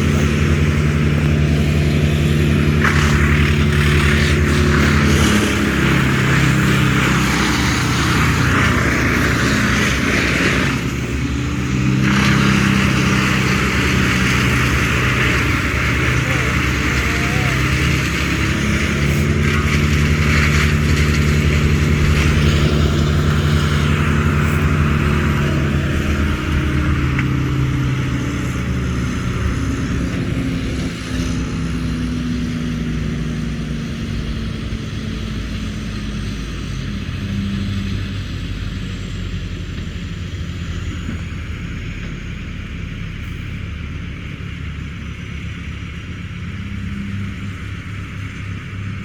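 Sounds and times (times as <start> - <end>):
hissing wash: 0.0 - 33.2
large engine running: 0.0 - 49.0.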